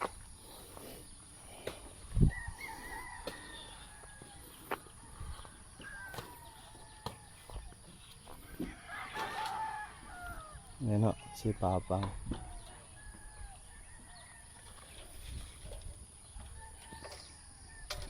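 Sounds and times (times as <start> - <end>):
roosters crowing: 2.0 - 15.2, 16.2 - 18.0.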